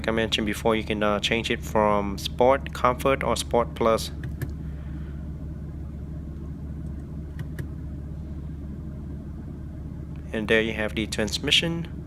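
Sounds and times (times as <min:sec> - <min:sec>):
car engine idling inside cabin: 0:00.0 - 0:12.0.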